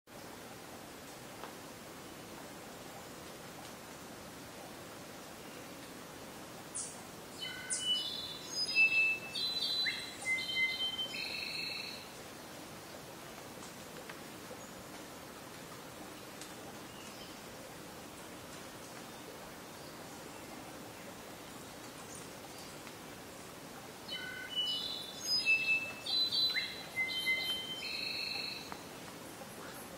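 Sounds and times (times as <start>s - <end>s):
steady background hiss: 0.1s - 29.9s
bird singing whistled notes: 6.8s - 12.0s, 24.1s - 28.8s.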